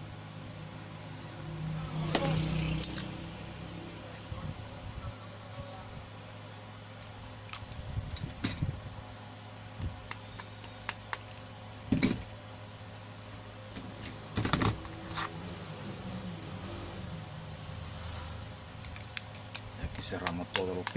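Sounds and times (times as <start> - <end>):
steady low hum: 0.0 - 20.9
hand tools clicking and tapping: 10.1 - 11.4, 18.8 - 20.9.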